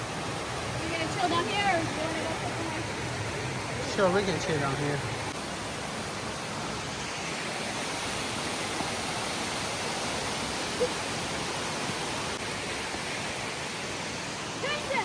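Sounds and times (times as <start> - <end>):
waterfall roaring: 0.0 - 15.0.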